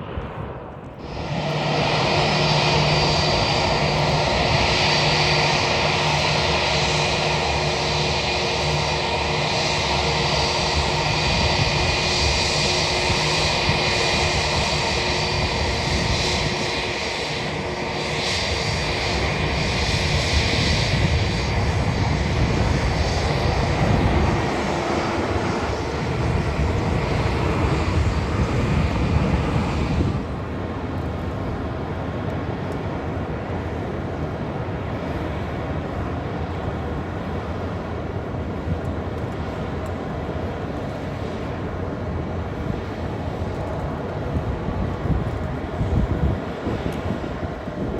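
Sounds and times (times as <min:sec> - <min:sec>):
jet engines roaring: 0:00.0 - 0:47.9.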